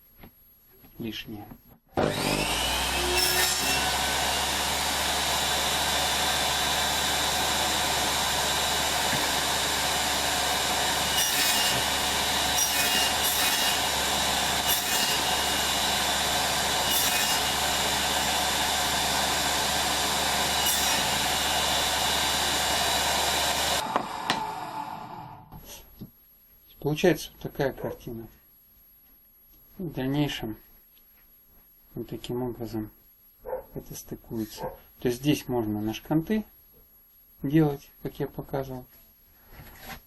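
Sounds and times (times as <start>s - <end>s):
table saw cutting wood: 2.0s - 25.6s.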